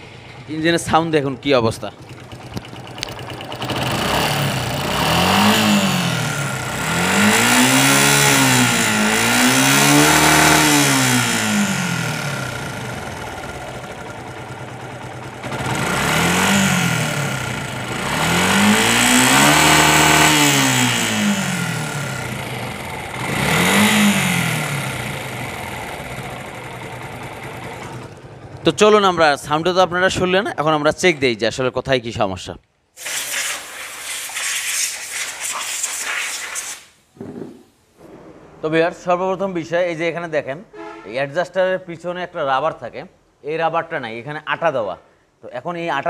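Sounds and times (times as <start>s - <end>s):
motorcycle engine revving: 1.9s - 29.2s.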